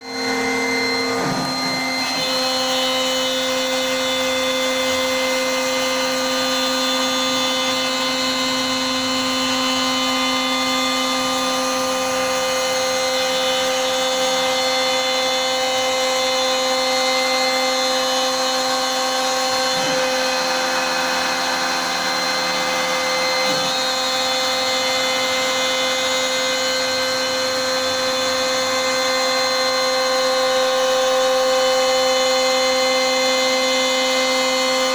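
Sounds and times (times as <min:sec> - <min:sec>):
router spindle whine: 0:00.0 - 0:34.9.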